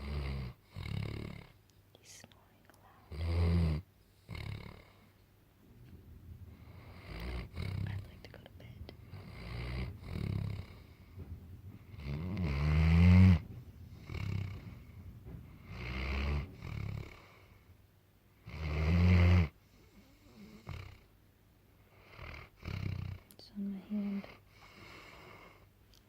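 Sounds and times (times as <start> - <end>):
toddler snoring: 0.0 - 1.6, 3.0 - 5.1, 6.5 - 17.7, 18.4 - 21.1, 21.9 - 23.3, 23.9 - 25.7.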